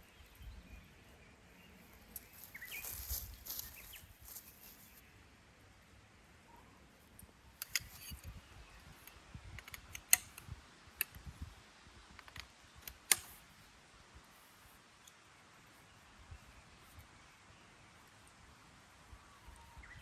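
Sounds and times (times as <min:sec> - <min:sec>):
sharp clicks and light knocks: 0:07.2 - 0:08.4, 0:09.0 - 0:11.4, 0:12.1 - 0:13.4.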